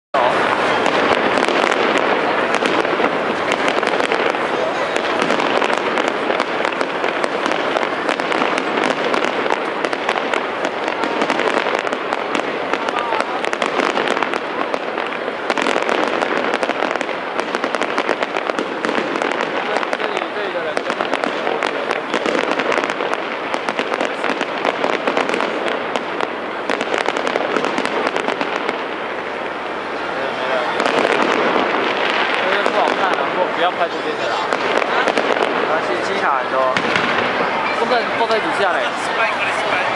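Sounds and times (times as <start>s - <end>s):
fireworks crackling and popping: 0.2s - 39.9s.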